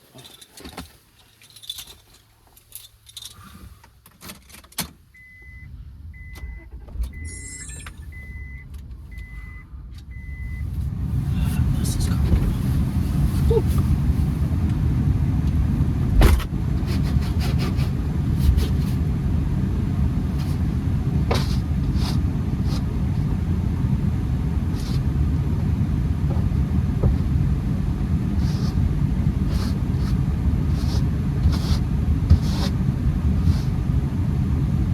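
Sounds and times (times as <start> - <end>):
car engine rumble: 0.0 - 34.9
keys jangling: 1.3 - 3.4
dashboard chime beeping: 5.2 - 10.7.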